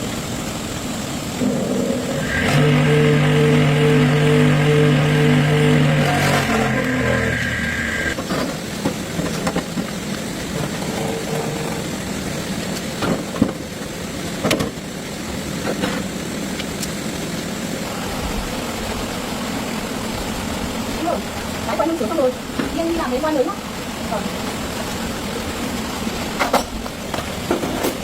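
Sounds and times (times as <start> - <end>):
tractor engine rumbling: 1.2 - 12.5.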